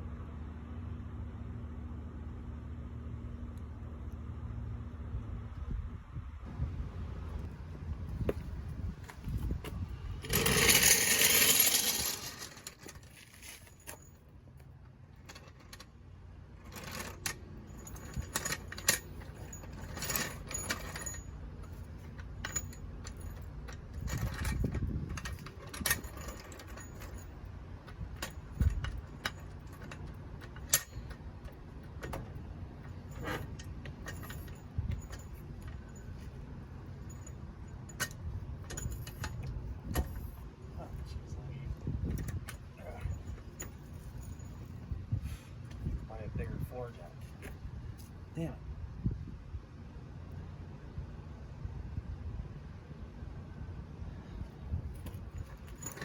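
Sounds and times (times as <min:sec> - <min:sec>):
floor jack scraping: 0:10.2 - 0:13.7
metallic clanks and clicks: 0:16.6 - 0:36.4.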